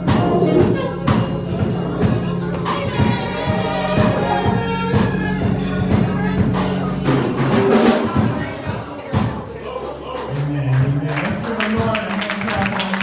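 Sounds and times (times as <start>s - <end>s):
drum hits: 0.0s - 10.4s
gospel band playing: 0.0s - 13.0s.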